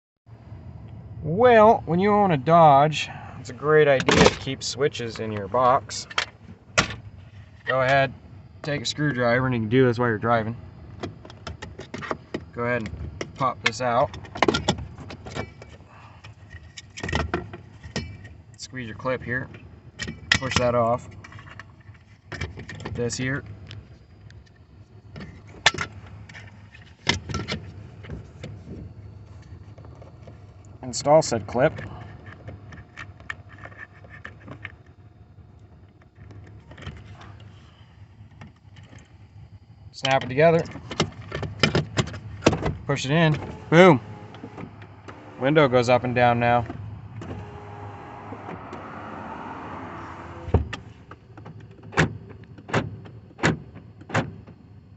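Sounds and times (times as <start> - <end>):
low hum: 23.0 - 51.0
power window motor running: 43.0 - 50.9.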